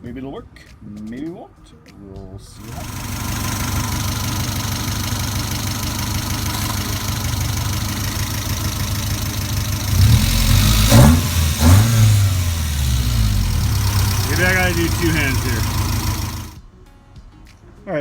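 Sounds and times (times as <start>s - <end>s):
car engine idling and revving: 2.6s - 16.6s.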